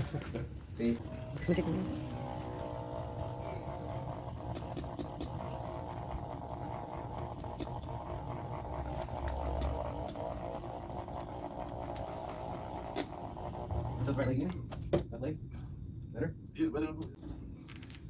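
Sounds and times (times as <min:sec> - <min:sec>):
small electric motor buzzing: 0:00.8 - 0:14.2.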